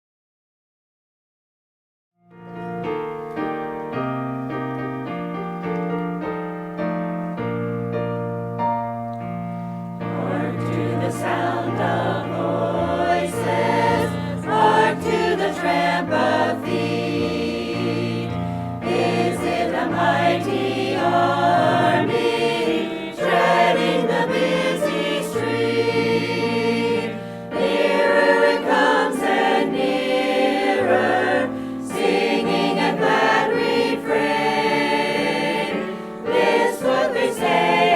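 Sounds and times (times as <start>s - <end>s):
piano accompaniment: 2.2s - 37.9s
choir singing: 10.0s - 37.9s.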